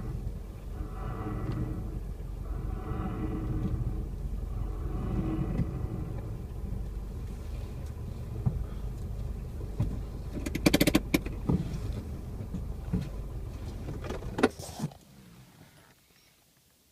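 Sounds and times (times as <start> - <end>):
car rumbling: 0.0 - 15.6.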